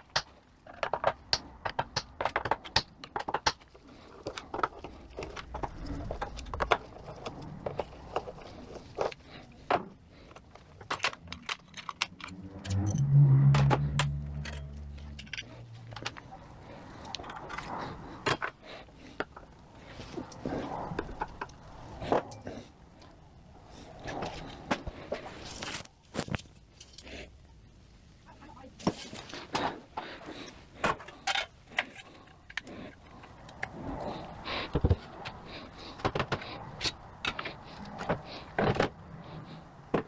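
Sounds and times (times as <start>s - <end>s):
small metal parts clinking: 10.3s - 13.0s, 13.9s - 16.3s
low hum: 11.4s - 18.2s.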